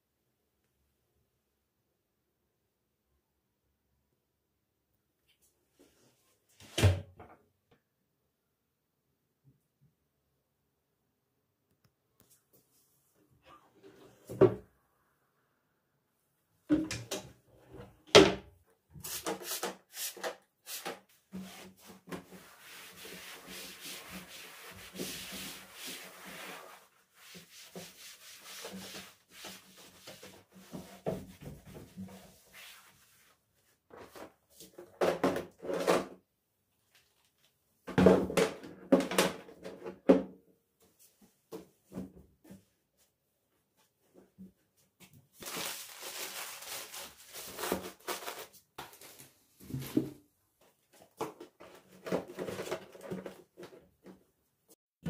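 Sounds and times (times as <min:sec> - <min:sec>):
objects knocked and set down: 0:37.9 - 0:40.3.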